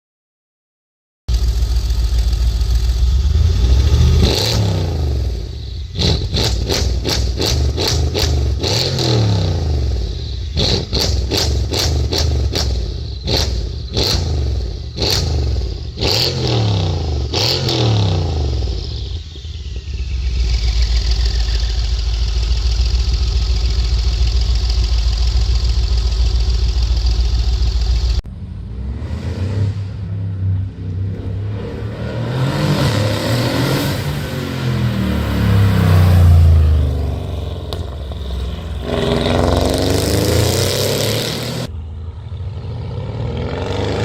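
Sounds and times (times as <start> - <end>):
car engine revving: 1.3 - 41.7.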